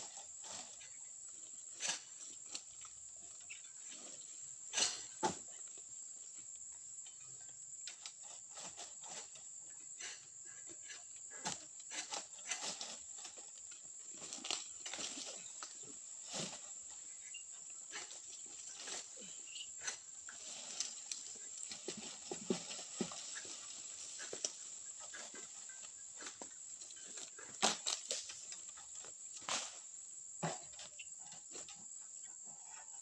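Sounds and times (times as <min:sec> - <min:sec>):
palm fronds knocking and clattering: 0:11.3 - 0:31.0.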